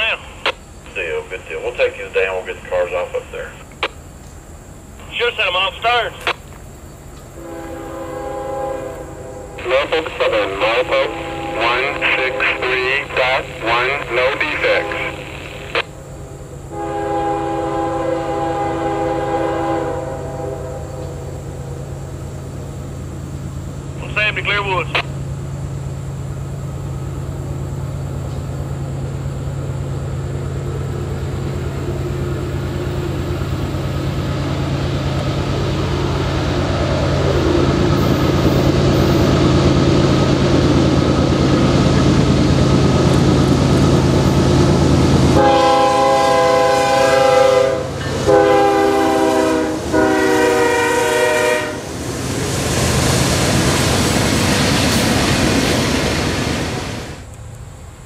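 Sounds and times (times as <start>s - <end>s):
diesel locomotive engine drone: 0.0s - 58.0s
rumble of train passing: 0.0s - 58.0s
locomotive air horn blasts: 7.4s - 13.1s, 14.6s - 21.4s, 45.3s - 51.9s.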